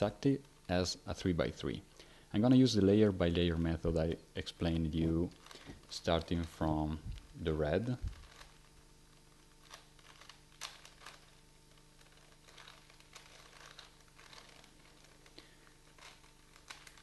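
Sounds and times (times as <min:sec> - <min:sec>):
puzzle cube plastic clicks: 0:12.4 - 0:17.0.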